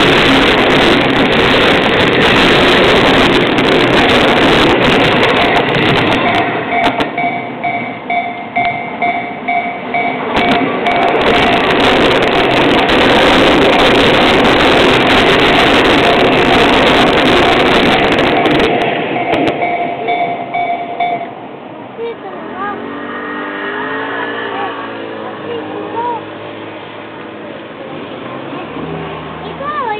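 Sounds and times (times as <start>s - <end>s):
passing train rumble: 0.0s - 29.9s
level crossing warning bell: 6.1s - 11.8s, 17.2s - 21.5s.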